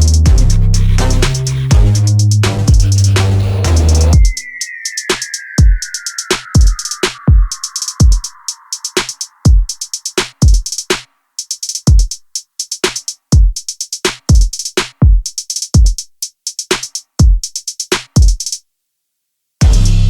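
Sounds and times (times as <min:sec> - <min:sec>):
electronic music with drum-machine beat: 0:00.0 - 0:18.6, 0:19.6 - 0:20.0.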